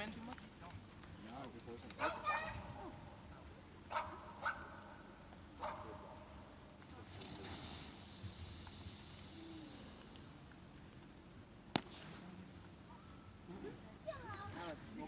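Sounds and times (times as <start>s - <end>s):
dog barking: 2.0s - 3.0s, 3.9s - 5.0s, 5.6s - 6.4s
firework crackling hiss: 6.2s - 12.5s.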